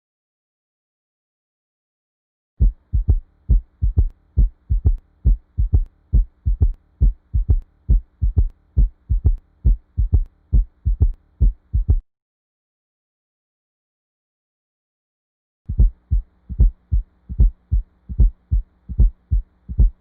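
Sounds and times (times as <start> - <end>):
faint steady hum: 2.6 - 12.0, 15.7 - 20.0
heartbeat thumps: 2.6 - 12.0, 15.7 - 20.0.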